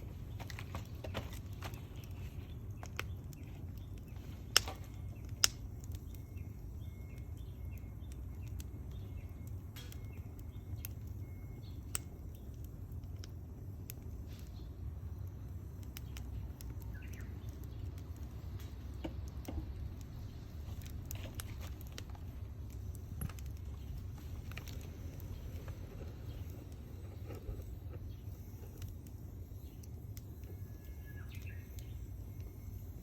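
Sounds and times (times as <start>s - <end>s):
low steady rumble: 0.0s - 33.0s
wood fire crackling: 0.0s - 33.0s.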